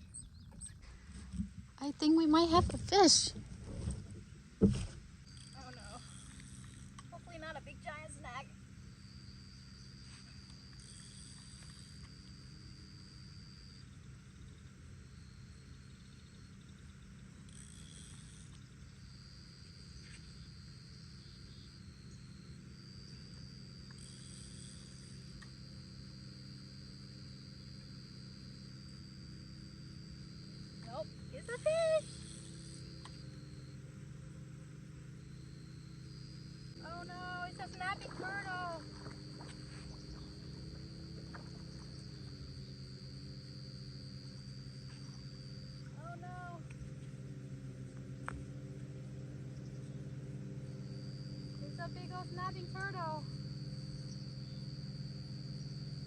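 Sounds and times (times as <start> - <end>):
low background hum: 0.0 - 56.0
insect trilling: 5.2 - 47.0, 49.4 - 56.0
faint ticks: 5.3 - 7.1, 10.0 - 12.4, 17.4 - 18.8, 23.2 - 25.7, 30.8 - 33.4
short high buzz: 17.4 - 46.6.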